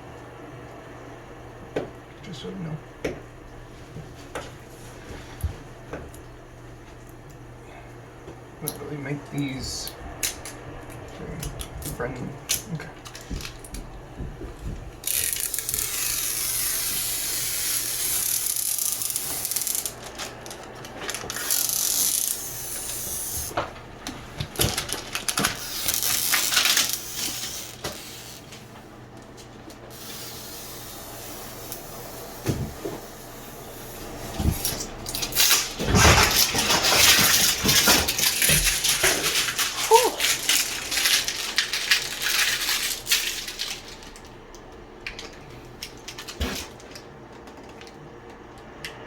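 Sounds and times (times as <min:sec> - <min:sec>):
rustling and crinkling: 0:23.7 - 0:28.7, 0:34.4 - 0:44.3.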